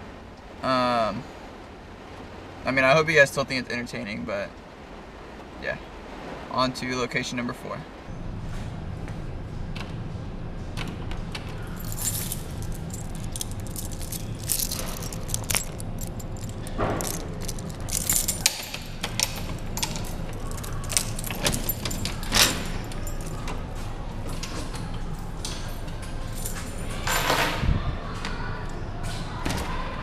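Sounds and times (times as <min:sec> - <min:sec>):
low hum: 0:07.9 - 0:29.3
keys jangling and clicking: 0:11.4 - 0:27.6.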